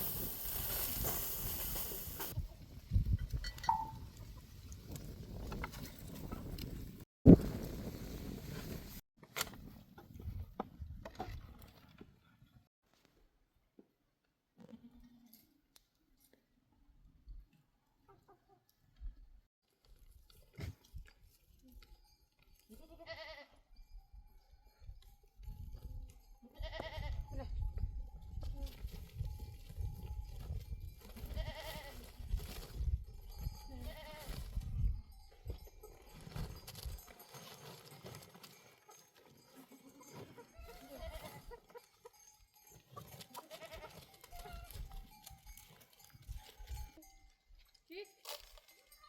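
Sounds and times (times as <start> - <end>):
goat bleating: 22.7 - 23.6, 26.6 - 27.3, 31.3 - 32.0, 33.8 - 34.3, 39.7 - 41.6, 43.4 - 44.8.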